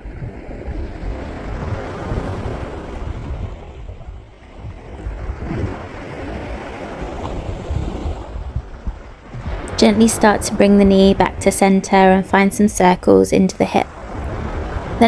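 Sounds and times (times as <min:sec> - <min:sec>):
wind buffeting microphone: 0:00.0 - 0:10.5, 0:13.9 - 0:15.0
sea waves washing onto beach: 0:00.0 - 0:15.0.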